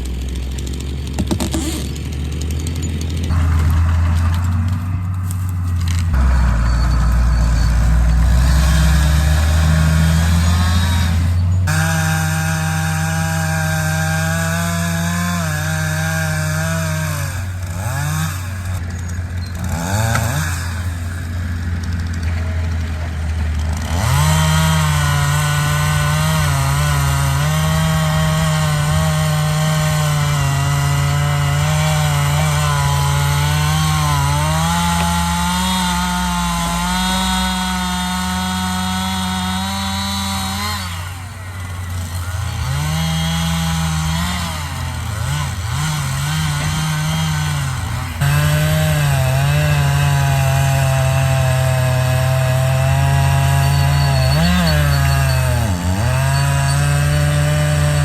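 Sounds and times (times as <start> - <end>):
chainsaw cutting through wood: 0.0 - 58.0.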